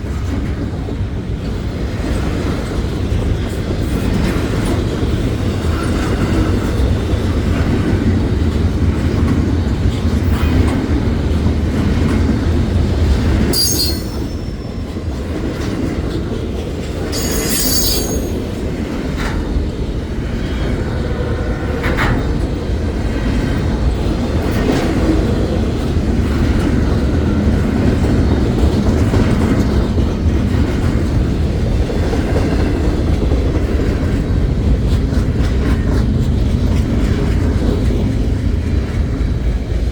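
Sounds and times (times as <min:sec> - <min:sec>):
freight train wheels rumbling: 0:00.0 - 0:39.9
high wheel squeals: 0:13.6 - 0:15.0, 0:17.1 - 0:18.5.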